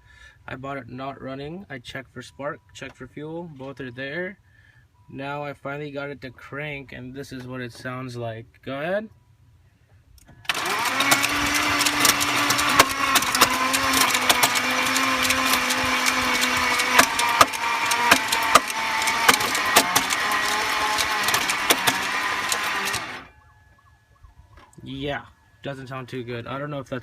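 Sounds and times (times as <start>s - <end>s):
engine cranking by starter: 10.2s - 23.3s
irregular clicks and knocks: 10.5s - 23.3s.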